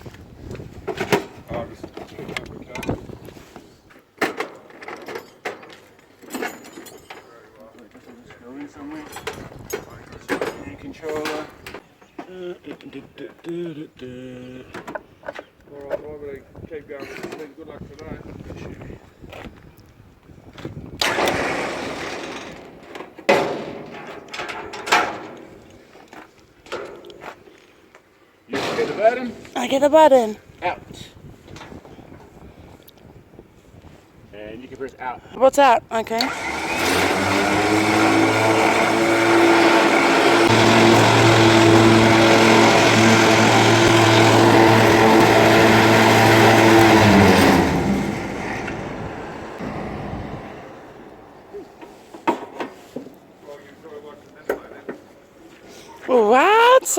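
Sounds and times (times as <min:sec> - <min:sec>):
electric winch motor humming: 0:36.2 - 0:51.3.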